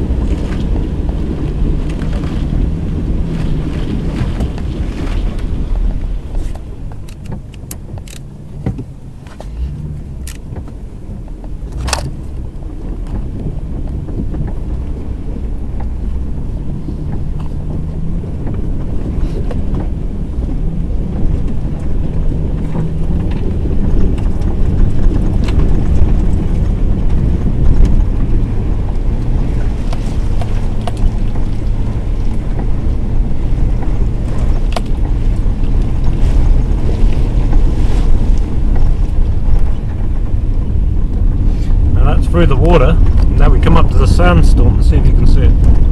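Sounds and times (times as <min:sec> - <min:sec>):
truck driving through water: 0:00.0 - 0:45.9
truck engine running: 0:00.0 - 0:45.9
wind rumbling on microphone: 0:00.0 - 0:45.9.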